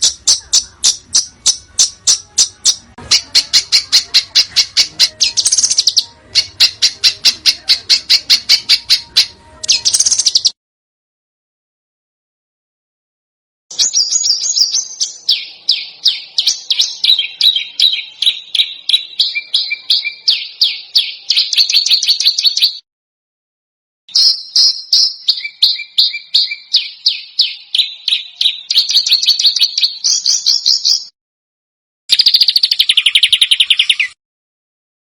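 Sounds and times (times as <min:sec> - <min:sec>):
songbird harsh repeated notes: 0:00.0 - 0:10.5, 0:13.7 - 0:22.8, 0:24.1 - 0:31.1.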